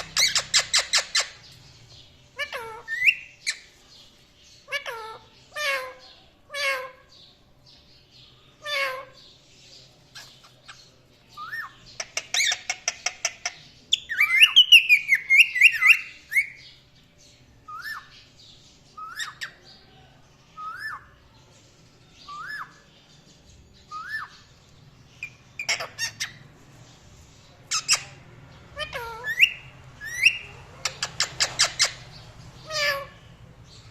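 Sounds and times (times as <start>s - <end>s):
parrots chirping and squawking: 0.0s - 7.4s, 8.5s - 33.9s.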